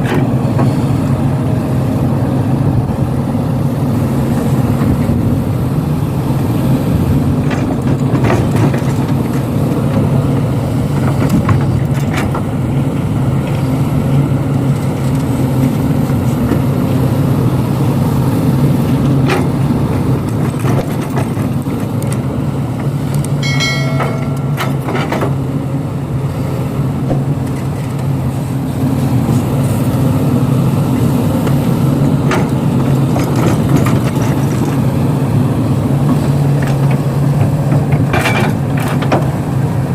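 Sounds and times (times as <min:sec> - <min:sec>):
heavy diesel engine humming: 0:00.0 - 0:39.9
brief high-pitched tone: 0:23.4 - 0:24.9
knocks and clanks: 0:23.4 - 0:25.6, 0:36.1 - 0:39.3.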